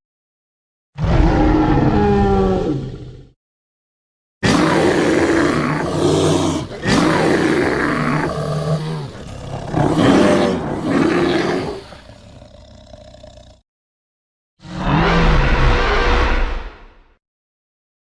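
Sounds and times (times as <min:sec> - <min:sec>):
deep dinosaur roar: 0:01.0 - 0:03.4, 0:04.4 - 0:13.6.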